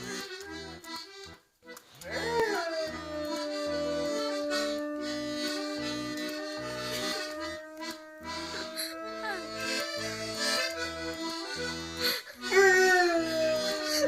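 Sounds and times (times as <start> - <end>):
accordion folk tune: 0.0 - 14.0
dog howling: 2.1 - 11.6, 12.4 - 14.0.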